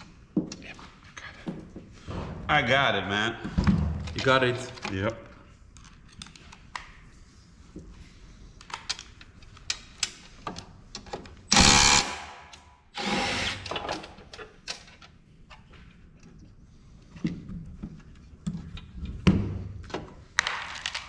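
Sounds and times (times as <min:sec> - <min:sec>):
power drill running: 0:11.5 - 0:12.4, 0:13.0 - 0:13.7.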